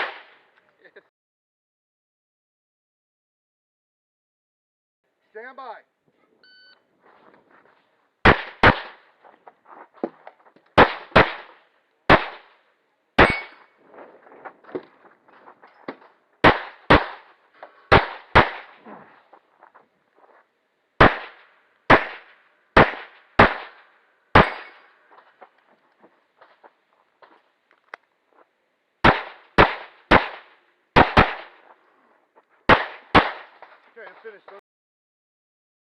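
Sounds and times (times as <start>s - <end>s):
pistol shots: 0.0s - 0.5s, 8.2s - 9.2s, 10.8s - 12.6s, 13.2s - 13.8s, 15.9s - 19.2s, 21.0s - 25.2s, 29.0s - 31.8s, 32.7s - 33.8s
shot timer beep: 6.4s - 6.8s.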